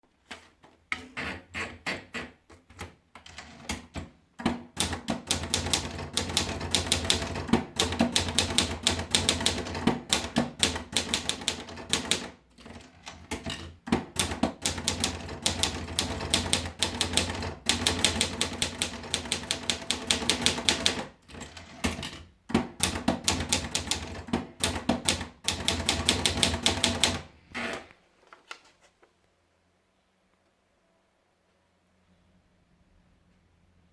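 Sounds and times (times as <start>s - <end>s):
typewriter keystrokes: 2.8s - 27.3s.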